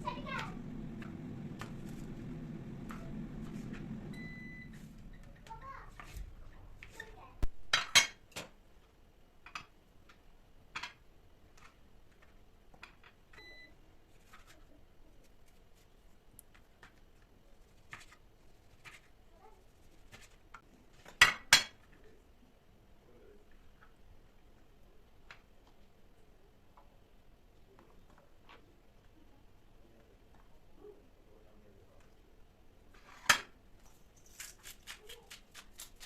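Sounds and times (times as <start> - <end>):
short electronic beep: 4.1 - 4.8.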